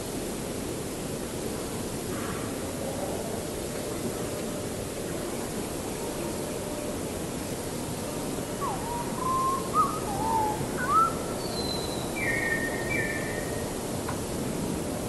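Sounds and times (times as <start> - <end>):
steady background hiss: 0.0 - 15.0
bird calling whistled notes: 8.6 - 13.6.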